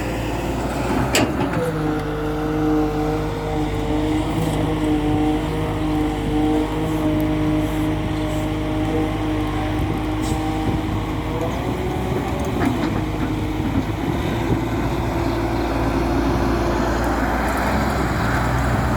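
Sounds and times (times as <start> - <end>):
excavator diesel engine running: 0.0 - 18.9.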